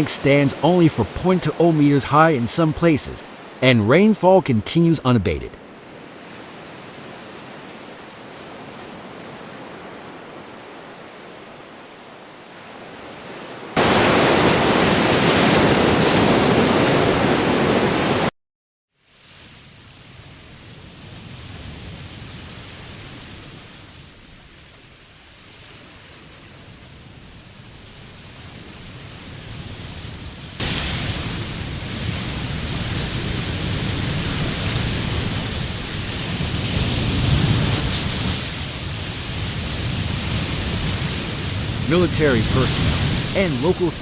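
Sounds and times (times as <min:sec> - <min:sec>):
rushing water: 0:00.0 - 0:18.3, 0:30.6 - 0:44.0.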